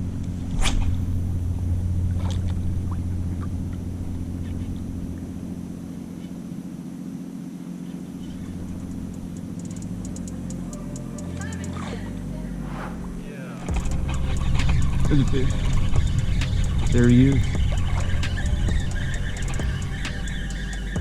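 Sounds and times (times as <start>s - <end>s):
background music with bass drone: 12.5s - 21.0s.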